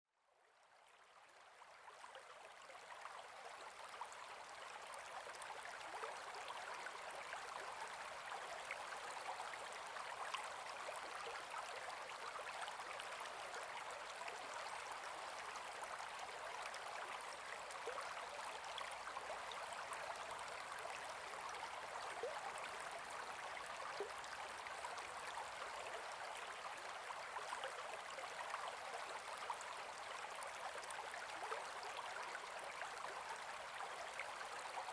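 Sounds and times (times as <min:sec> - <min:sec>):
river water flowing: 0:01.6 - 0:34.9.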